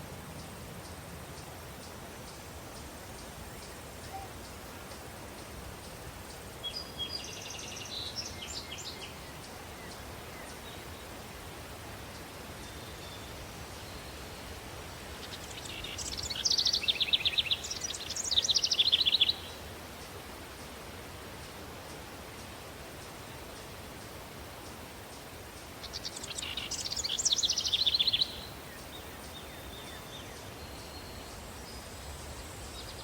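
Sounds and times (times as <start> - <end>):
breeze-like hiss: 0.0 - 33.0
songbird trilling: 15.2 - 19.6, 25.8 - 31.0.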